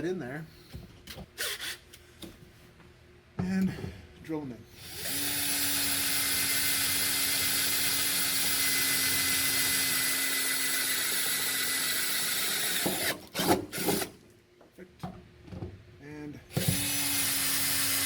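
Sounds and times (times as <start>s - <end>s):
electric drill drilling into metal: 4.8s - 14.1s, 16.6s - 18.0s.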